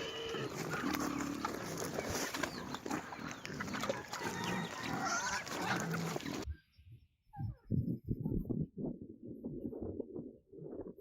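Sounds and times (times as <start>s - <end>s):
farm animals calling: 0.0s - 6.5s.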